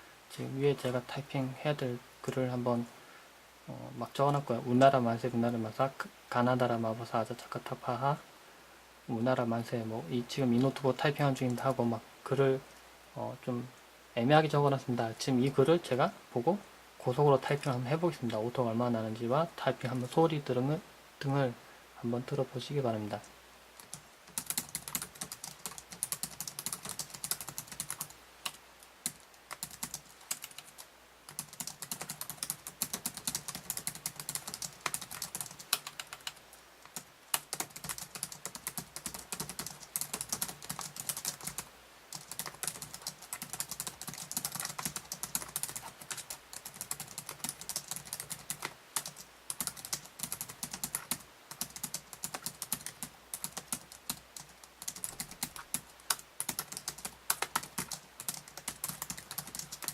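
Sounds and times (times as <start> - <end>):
fast typing on laptop keyboard: 23.8 - 59.9.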